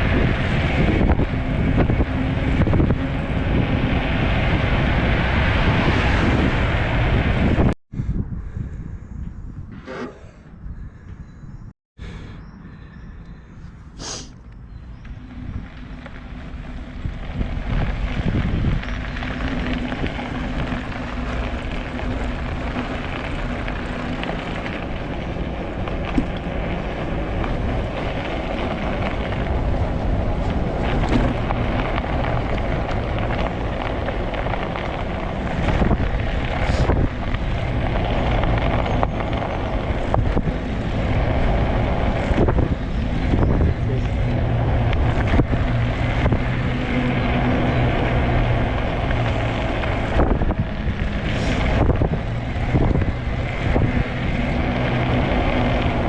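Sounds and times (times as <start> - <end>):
wind buffeting microphone: 0.0 - 56.0
tyre rumble over snow and ice: 15.2 - 56.0.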